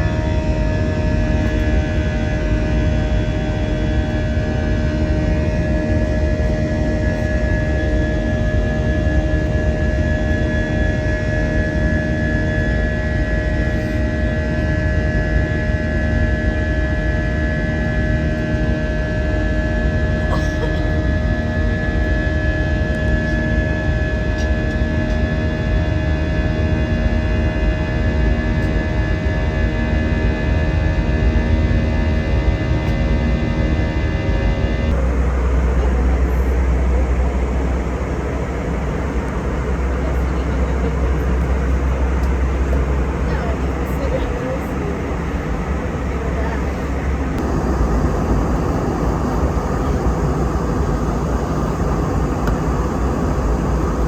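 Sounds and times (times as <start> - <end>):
low engine rumble with whine: 0.0 - 54.0
vehicle running rumble and hiss: 31.4 - 54.0.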